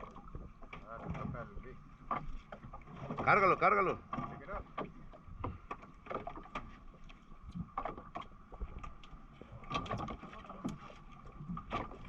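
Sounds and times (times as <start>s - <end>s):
gear knocking against boat: 0.0s - 6.8s.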